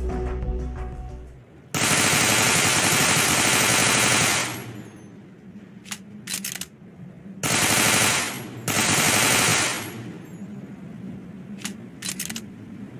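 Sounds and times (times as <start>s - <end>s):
submachine gun automatic bursts: 1.8s - 4.8s, 7.4s - 10.1s
gun clicks: 5.8s - 6.8s, 11.6s - 12.6s.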